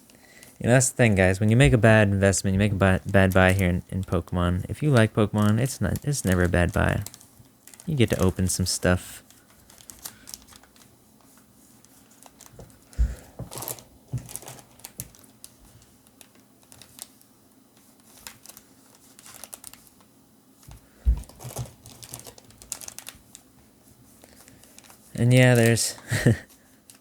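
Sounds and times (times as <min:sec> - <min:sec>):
foil wrappers crinkling: 0:00.2 - 0:20.1, 0:20.7 - 0:27.0
cards being handled: 0:01.1 - 0:07.1, 0:07.7 - 0:15.2.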